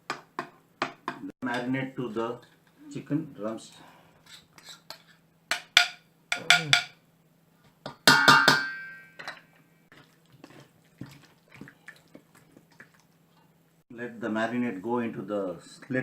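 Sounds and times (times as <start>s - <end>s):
utensils knocking against mixing bowl: 5.5s - 7.0s, 7.9s - 9.4s.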